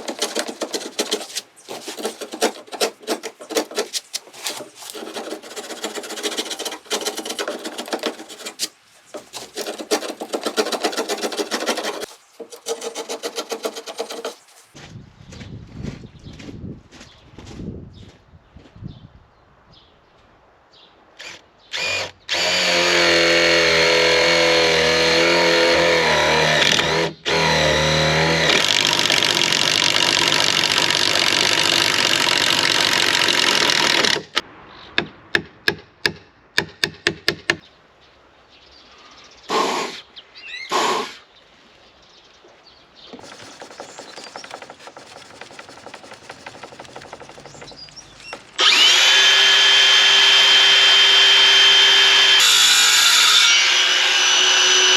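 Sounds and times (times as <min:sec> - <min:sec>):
rubbing noise: 0:00.0 - 0:14.8, 0:43.2 - 0:48.6
power drill drilling into wood: 0:21.2 - 0:34.3, 0:47.2 - 0:54.9.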